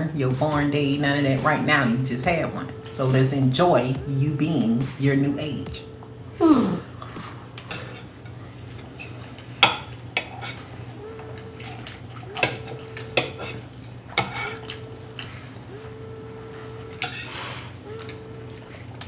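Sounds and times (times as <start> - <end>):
cutlery clinking against plates: 17.0 - 17.3.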